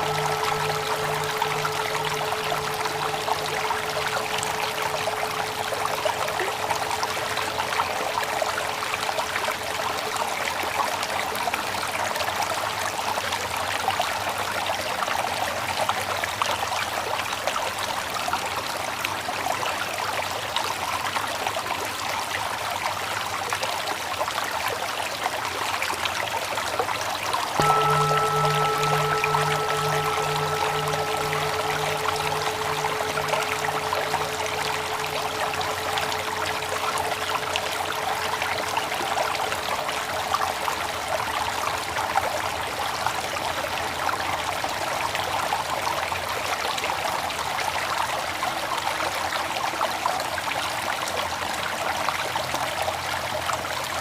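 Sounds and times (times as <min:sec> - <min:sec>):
lingering tone: 0:00.0 - 0:10.6, 0:27.6 - 0:41.7
stream water babbling: 0:00.0 - 0:11.3, 0:27.6 - 0:42.6.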